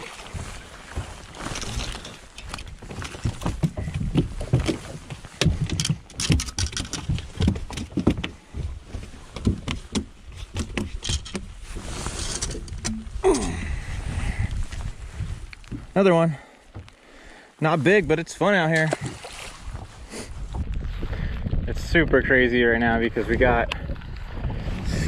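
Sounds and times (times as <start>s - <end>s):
knocks and rustling in boat: 0.0s - 13.2s, 14.3s - 16.9s, 18.7s - 22.3s.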